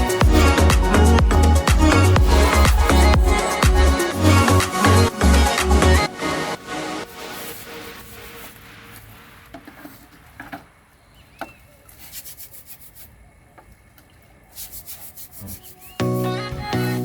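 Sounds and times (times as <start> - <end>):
music: 0.0 - 7.8, 16.0 - 17.0
hand scrubbing strokes: 0.0 - 10.4, 11.8 - 13.2, 14.3 - 17.0.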